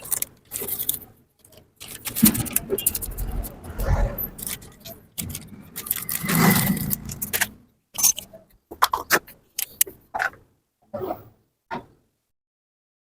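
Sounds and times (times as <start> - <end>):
metal tools clinking and scraping: 0.0 - 9.9.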